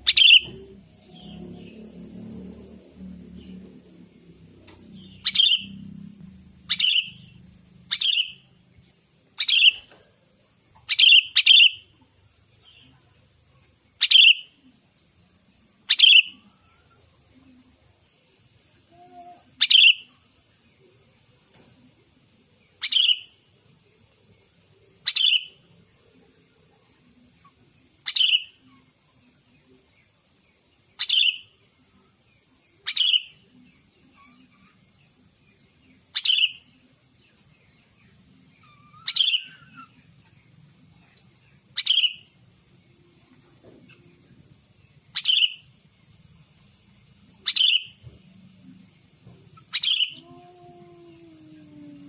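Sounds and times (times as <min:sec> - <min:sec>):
bird giving sharp calls: 0:00.0 - 0:00.5, 0:05.0 - 0:05.8, 0:38.6 - 0:40.0, 0:49.6 - 0:50.2.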